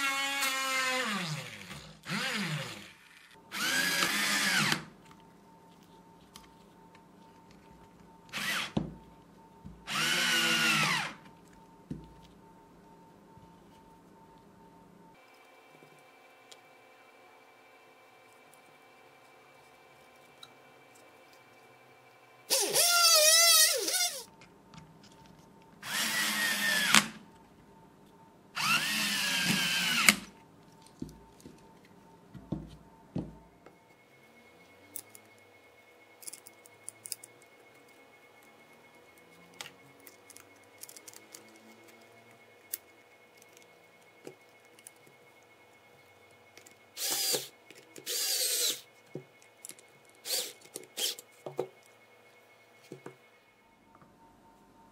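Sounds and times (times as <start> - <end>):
electric drill running: 0.0 - 4.8, 8.3 - 8.8, 9.9 - 11.2, 22.5 - 24.3, 25.8 - 27.2, 28.6 - 30.3, 47.0 - 48.9, 50.2 - 51.2.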